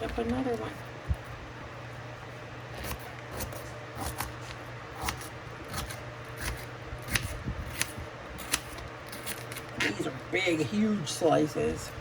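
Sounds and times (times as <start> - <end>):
knife cutting pepper: 2.7 - 9.9.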